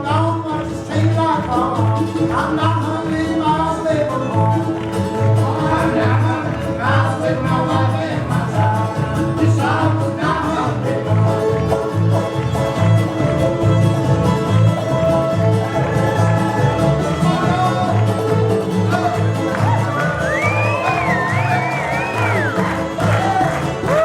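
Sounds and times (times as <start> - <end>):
fiddle: 0.0 - 24.0
string band playing: 0.0 - 24.0.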